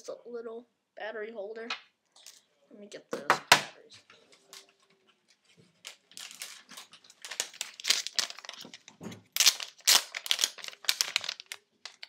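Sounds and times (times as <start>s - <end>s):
plastic packaging crinkling: 5.7s - 12.0s.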